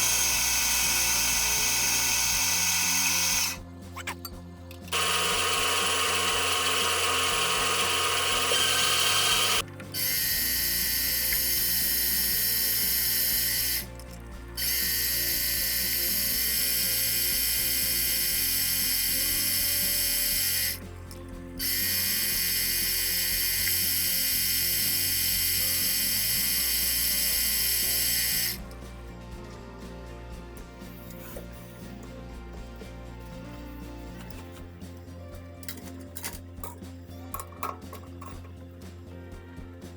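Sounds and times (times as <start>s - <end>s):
machine tool cutting steel: 0.0s - 28.6s.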